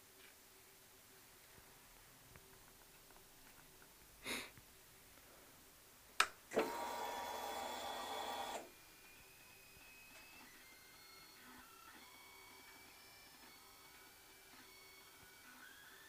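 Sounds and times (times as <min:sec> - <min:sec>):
small electric motor whirring: 0:06.6 - 0:08.7.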